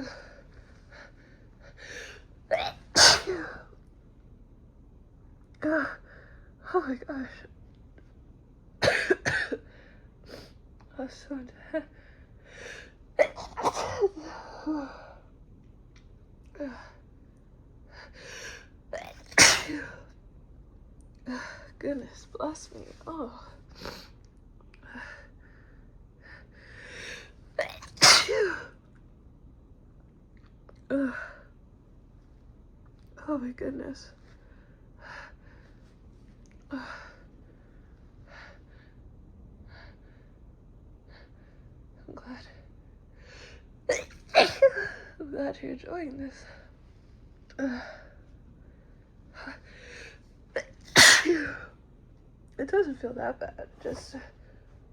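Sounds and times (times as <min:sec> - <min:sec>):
woman sneezing: 0:02.5 - 0:03.6, 0:13.2 - 0:14.2, 0:19.0 - 0:20.0, 0:27.6 - 0:28.7, 0:43.9 - 0:45.0, 0:50.6 - 0:51.7.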